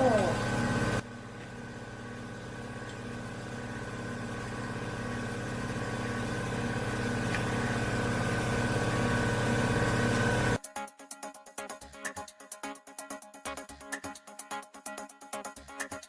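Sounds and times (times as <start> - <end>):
motor hum with low buzz: 0.0 - 10.6.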